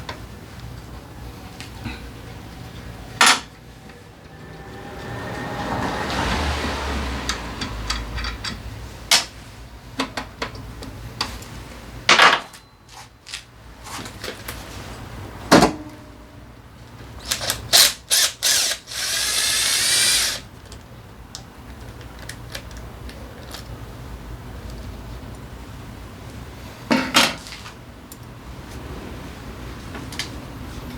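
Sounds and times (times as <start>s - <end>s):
power tool spinning: 17.3s - 20.5s.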